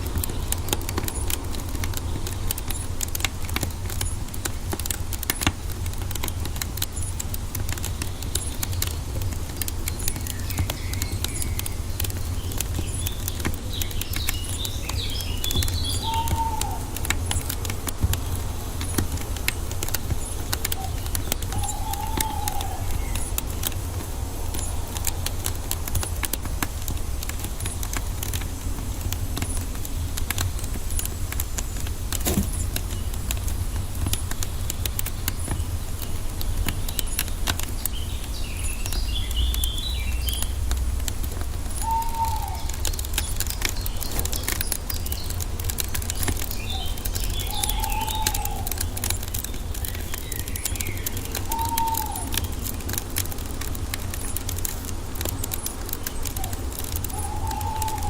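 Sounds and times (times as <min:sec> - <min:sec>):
small birds chirping: 0:00.0 - 0:58.0
wood fire crackling: 0:00.0 - 0:58.0
bird call: 0:12.8 - 0:17.6, 0:20.2 - 0:23.4, 0:41.7 - 0:45.4, 0:46.3 - 0:52.6, 0:56.4 - 0:58.0.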